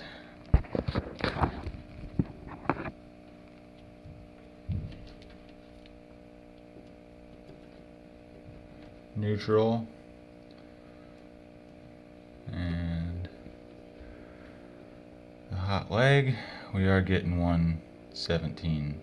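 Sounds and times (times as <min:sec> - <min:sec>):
inverter electrical hum: 0:00.0 - 0:19.0
thump: 0:04.7 - 0:05.1.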